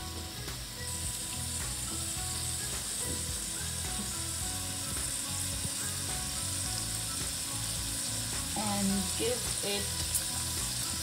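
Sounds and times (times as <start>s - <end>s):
chicken sizzling in a pan: 0.0s - 11.0s.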